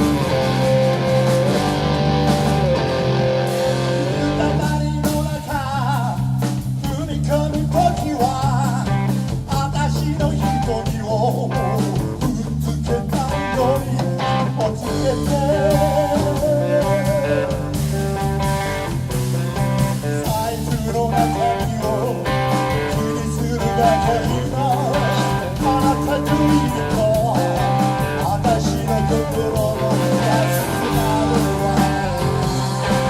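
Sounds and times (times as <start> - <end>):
electric guitar lead with vibrato: 0.0 - 5.6, 13.0 - 33.0
live rock band playing blues: 0.0 - 33.0.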